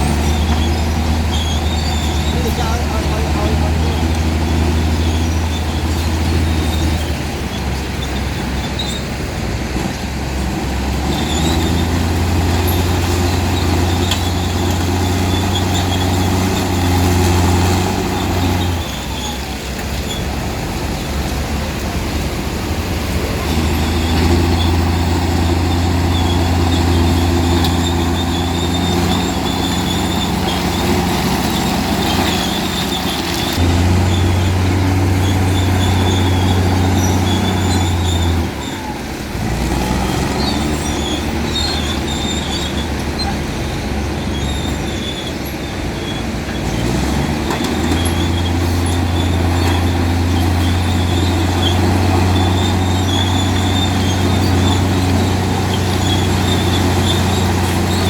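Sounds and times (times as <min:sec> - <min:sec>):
bulldozer diesel engine under load: 0:00.0 - 0:58.0.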